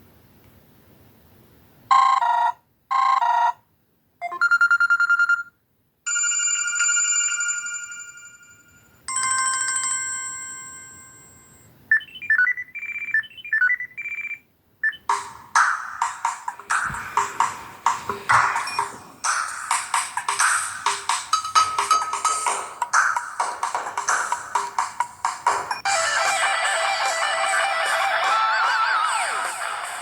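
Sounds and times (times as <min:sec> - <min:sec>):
ringtone melody: 0:01.9 - 0:03.6, 0:11.9 - 0:30.0
buzzy ringtone tones: 0:16.0 - 0:30.0.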